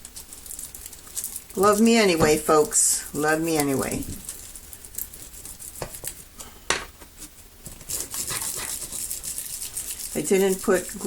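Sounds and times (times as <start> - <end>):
foil being handled: 0.0 - 6.3
foil rubbing: 0.0 - 6.3, 7.2 - 11.0.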